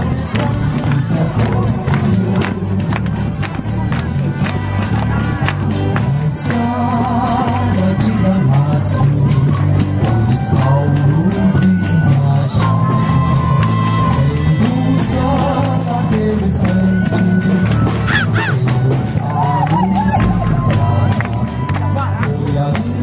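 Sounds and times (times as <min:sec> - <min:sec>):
music with beat and bass line: 0:00.0 - 0:23.0
person singing: 0:05.9 - 0:23.0.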